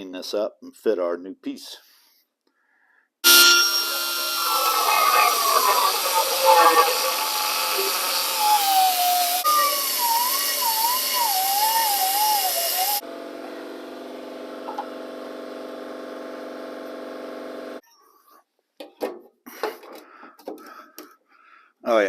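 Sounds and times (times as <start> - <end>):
steady machine hum: 3.2 - 17.7
power grinder on sheet metal: 3.3 - 13.0.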